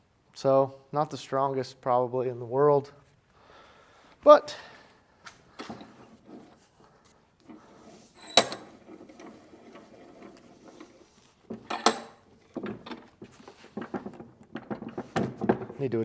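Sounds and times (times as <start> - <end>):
metal scraping rattles: 7.5 - 16.0
metal vise ringing clanks: 8.2 - 10.4, 11.5 - 13.1.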